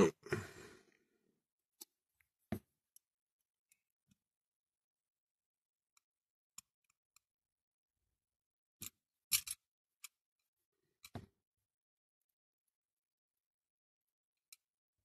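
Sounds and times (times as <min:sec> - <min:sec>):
clicks of small toy car parts: 0:08.8 - 0:10.2.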